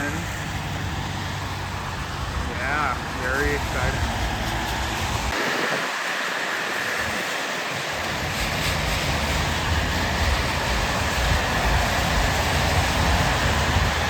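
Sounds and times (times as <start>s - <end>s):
rain hissing: 0.0s - 14.0s
wind rumbling on microphone: 0.0s - 14.0s.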